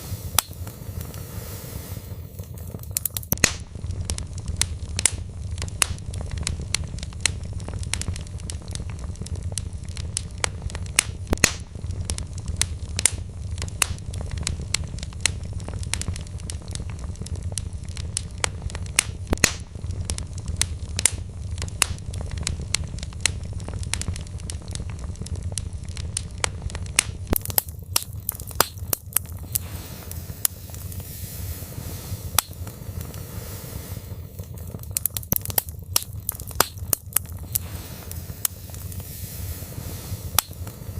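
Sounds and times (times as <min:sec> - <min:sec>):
soft hiss: 0:00.0 - 0:03.4, 0:27.4 - 0:40.9
log fire crackling: 0:00.0 - 0:40.9
low rumble: 0:27.5 - 0:40.9.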